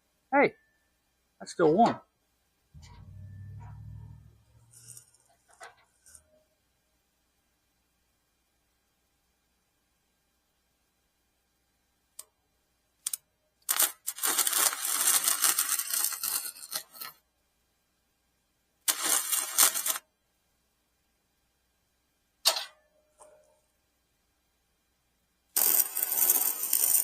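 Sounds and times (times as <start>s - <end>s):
welding arc crackling: 2.8s - 6.2s, 13.7s - 17.0s, 18.9s - 20.0s, 25.6s - 27.0s.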